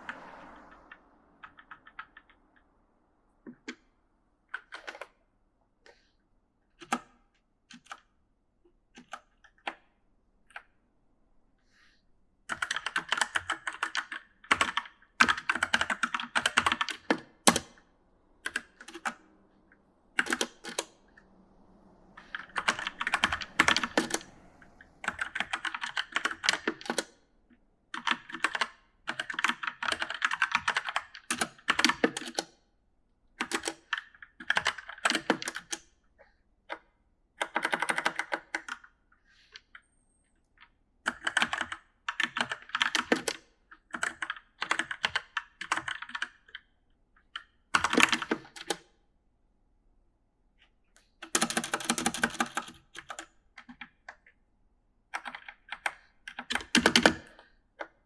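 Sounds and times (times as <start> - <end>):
typing on mechanical keyboard: 4.5 - 5.2, 6.8 - 8.2, 8.9 - 9.9, 12.5 - 19.3, 20.2 - 20.9, 22.2 - 27.2, 27.9 - 32.5, 33.4 - 35.9, 37.4 - 39.6, 40.6 - 46.8, 47.4 - 48.9, 51.2 - 54.4, 55.1 - 58.0.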